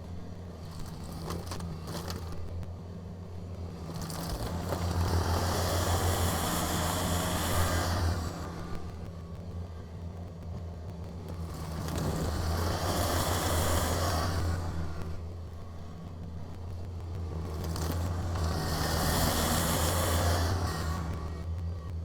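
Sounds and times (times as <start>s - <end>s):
tractor diesel engine running: 0.1s - 9.2s, 11.2s - 21.4s.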